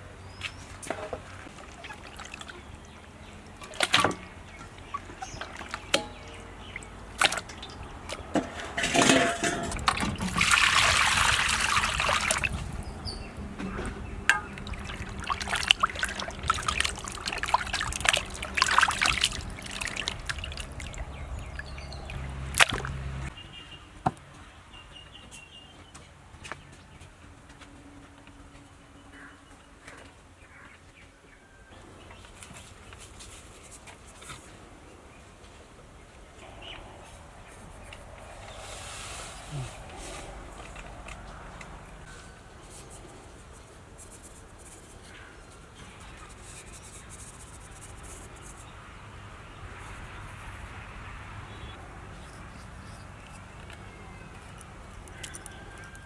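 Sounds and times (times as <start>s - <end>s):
water pouring and splashing: 0.4s - 23.3s, 38.0s - 42.1s.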